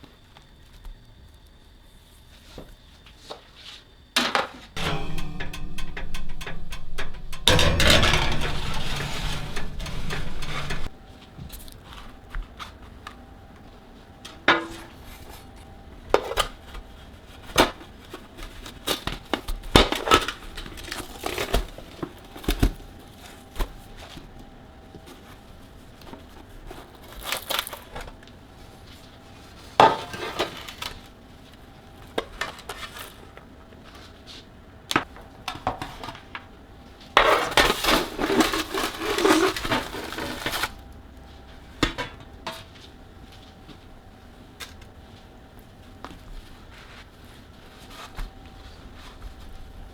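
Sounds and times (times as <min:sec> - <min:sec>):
dish handling noise: 0:04.8 - 0:10.9
dishes knocking and clinking: 0:04.8 - 0:10.9.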